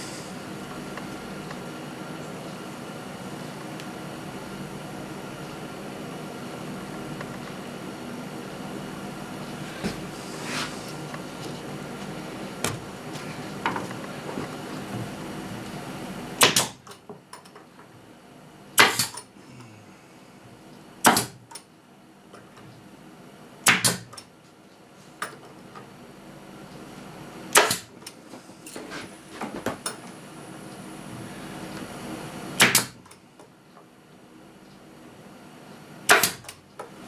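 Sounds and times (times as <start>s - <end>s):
pneumatic nailer firing: 16.4s - 16.9s, 18.8s - 19.3s, 21.0s - 21.5s, 23.6s - 24.2s, 27.5s - 28.1s, 32.6s - 33.1s, 36.1s - 36.6s.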